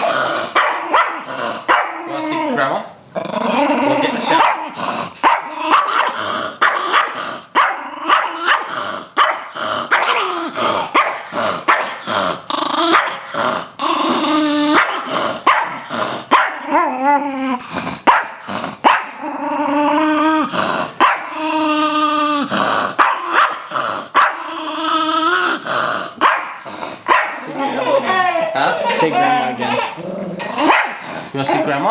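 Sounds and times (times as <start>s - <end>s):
dog yowling: 0.0s - 2.6s, 3.5s - 12.0s, 12.6s - 13.3s, 13.9s - 25.6s, 26.2s - 31.0s
small dog growling and barking: 0.0s - 2.6s, 3.2s - 31.8s.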